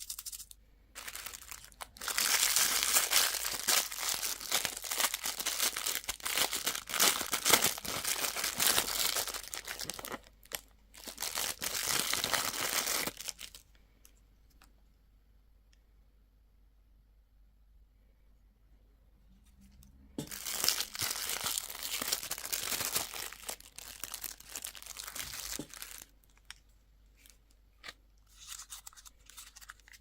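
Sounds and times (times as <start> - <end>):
wrapper crinkling and tearing: 0.0 - 13.6, 20.2 - 26.6, 28.3 - 30.0.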